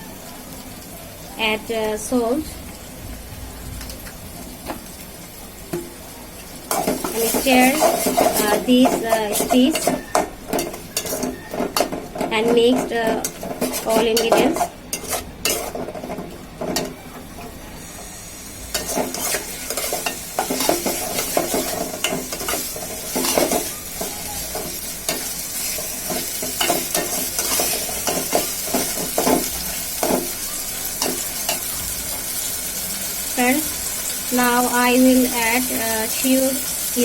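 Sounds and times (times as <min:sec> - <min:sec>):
food sizzling in oil: 0:00.0 - 0:37.0
utensil stirring and scraping pan: 0:06.6 - 0:17.6, 0:18.6 - 0:32.7.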